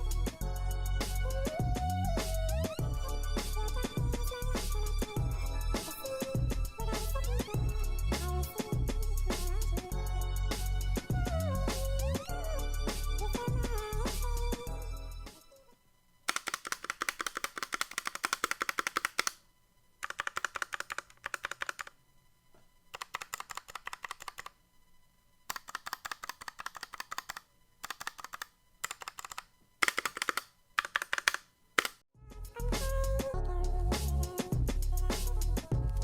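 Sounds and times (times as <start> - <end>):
typing on mechanical keyboard: 16.3 - 19.4, 20.0 - 22.0, 22.9 - 24.6, 25.5 - 32.0.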